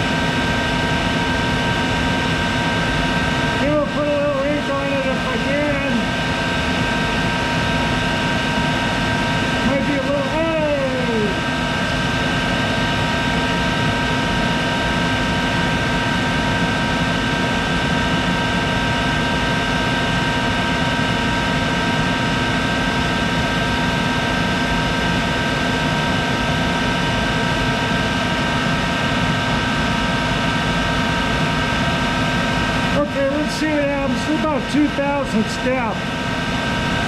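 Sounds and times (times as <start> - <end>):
lathe running with whine: 0.0 - 37.0.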